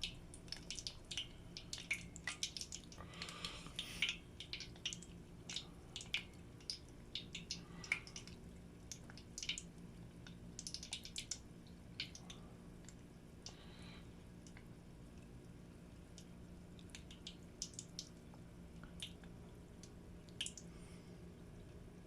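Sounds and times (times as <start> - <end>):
oil crackling and popping: 0.0 - 12.4
faint low hum: 0.0 - 22.0.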